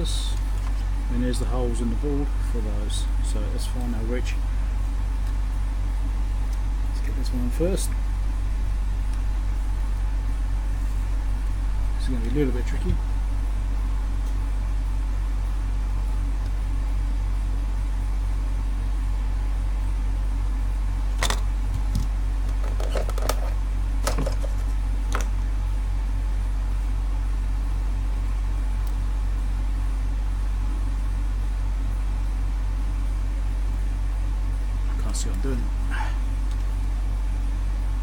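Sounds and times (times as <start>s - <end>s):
low electrical hum: 0.0s - 38.0s.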